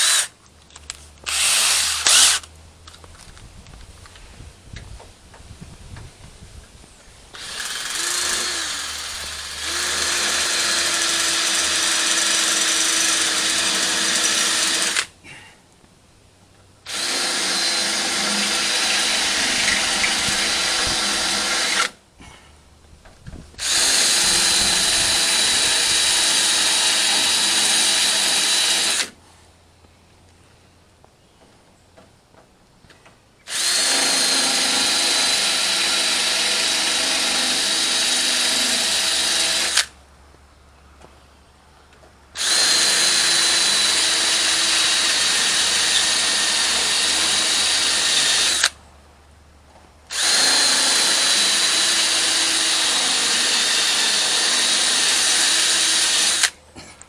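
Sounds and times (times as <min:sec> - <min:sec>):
electric drill grinding metal: 0:00.0 - 0:00.3, 0:01.3 - 0:02.5, 0:07.3 - 0:15.1, 0:16.9 - 0:22.0, 0:23.6 - 0:29.1, 0:33.5 - 0:39.9, 0:42.4 - 0:48.8, 0:50.1 - 0:56.6.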